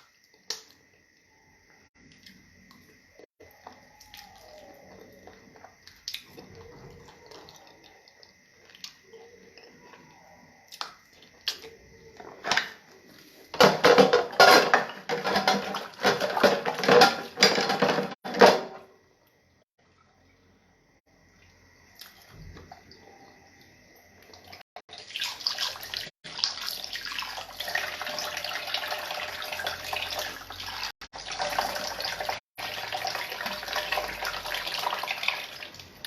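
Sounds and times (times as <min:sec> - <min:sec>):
water splashing: 0:24.3 - 0:36.0.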